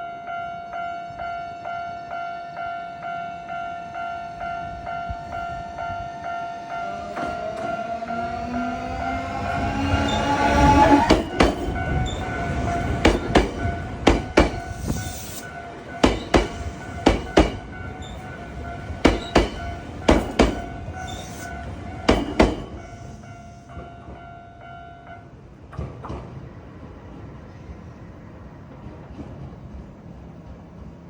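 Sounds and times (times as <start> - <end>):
crossing warning bell ringing: 0.0 - 25.4
train wheels clacking over rail joints: 7.1 - 23.1.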